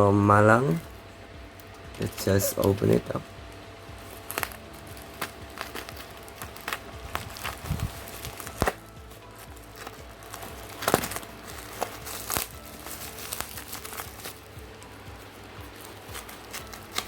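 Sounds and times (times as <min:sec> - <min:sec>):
packaging crinkling and clicking: 0:04.0 - 0:17.0
sharp packaging snaps: 0:04.1 - 0:09.0, 0:09.6 - 0:14.5, 0:15.7 - 0:17.0.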